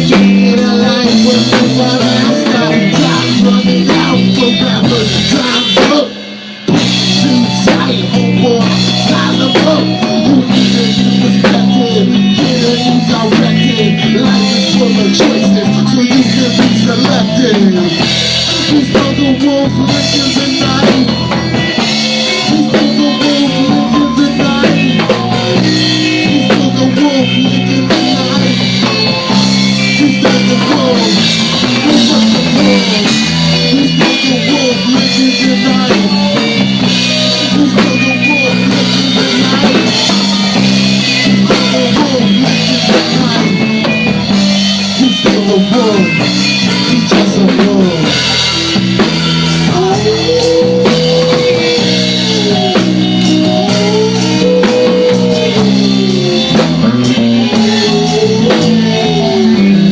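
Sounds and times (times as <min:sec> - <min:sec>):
bass line: 0:00.0 - 0:59.9
drum kit steady beat: 0:00.0 - 0:59.9
guitar with bending notes: 0:00.0 - 0:59.9.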